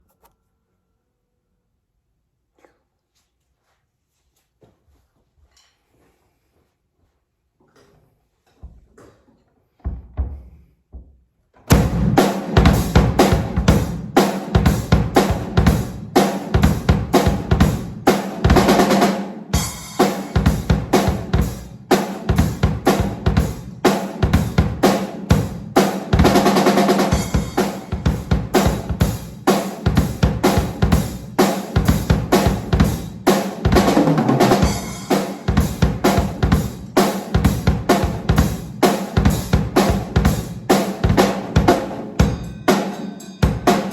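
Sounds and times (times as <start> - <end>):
drum kit beat: 11.7 - 43.9.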